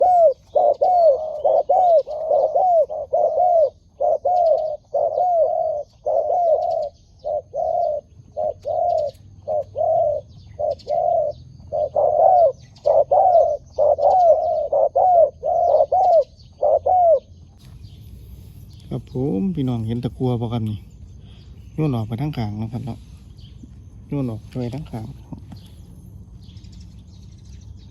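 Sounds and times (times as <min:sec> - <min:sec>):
dove cooing: 0:00.0 - 0:17.6.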